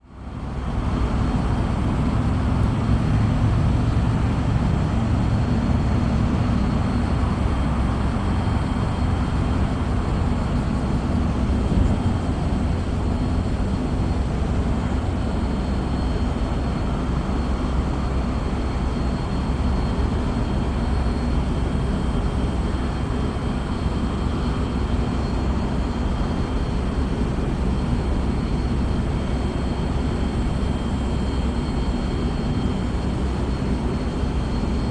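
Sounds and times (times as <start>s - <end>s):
low outdoor rumble: 0.2s - 17.1s.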